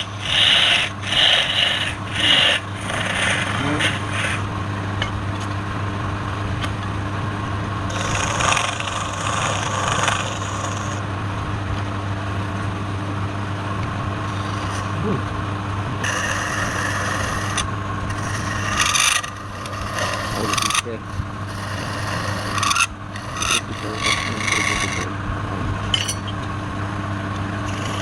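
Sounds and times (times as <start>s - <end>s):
turning tool scraping wood: 0.0s - 4.5s, 7.9s - 11.0s, 14.3s - 15.0s, 16.0s - 25.1s, 27.6s - 28.0s
wood lathe motor hum: 0.0s - 4.5s, 7.9s - 11.0s, 14.0s - 25.1s, 27.4s - 28.0s.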